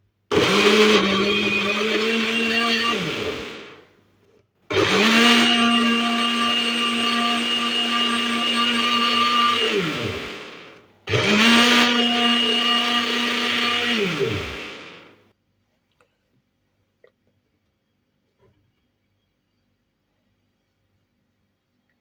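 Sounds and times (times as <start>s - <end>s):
blender motor whining: 0.3s - 3.8s, 4.7s - 15.2s.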